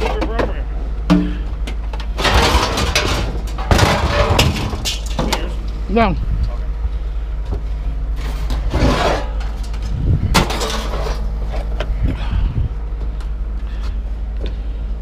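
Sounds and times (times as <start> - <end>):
objects scraping and clattering: 0.0 - 5.8, 8.1 - 11.9
low engine hum: 0.0 - 15.0.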